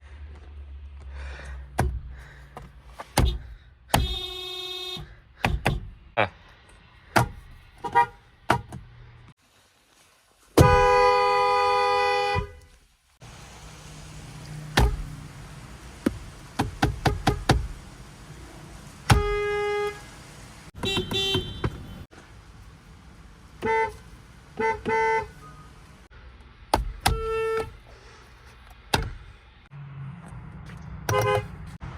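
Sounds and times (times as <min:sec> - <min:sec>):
car horn honking: 0:03.2 - 0:05.2, 0:07.8 - 0:08.2, 0:10.6 - 0:12.7, 0:19.1 - 0:20.2, 0:20.8 - 0:22.1, 0:23.6 - 0:24.0, 0:24.6 - 0:25.8, 0:27.1 - 0:27.8, 0:31.1 - 0:31.7.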